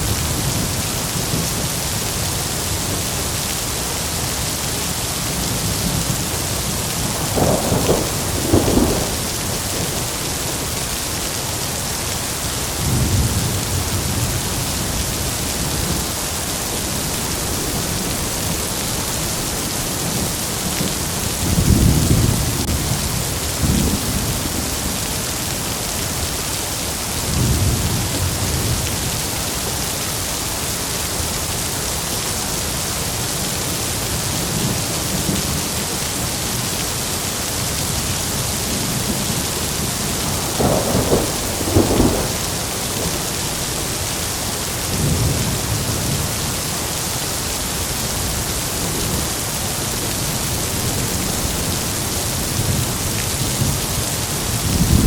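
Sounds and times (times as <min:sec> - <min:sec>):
heavy rain falling: 0:00.0 - 0:55.0
rolling thunder: 0:05.6 - 0:11.1, 0:38.6 - 0:44.0, 0:50.8 - 0:55.0
sharp thunderclaps: 0:07.1 - 0:10.4, 0:40.2 - 0:43.3.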